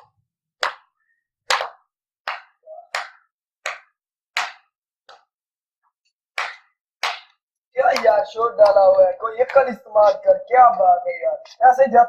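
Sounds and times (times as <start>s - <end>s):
sharp slaps: 0.0s - 5.4s, 6.3s - 9.8s.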